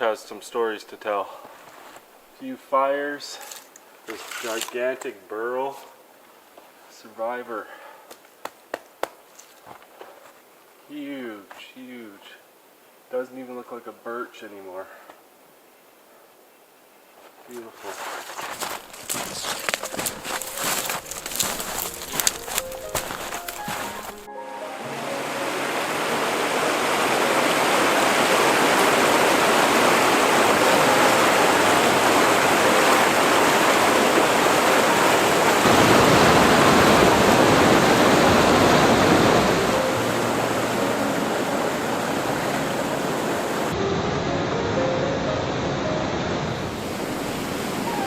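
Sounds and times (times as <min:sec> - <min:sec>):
waterfall rushing: 0:18.7 - 0:48.0.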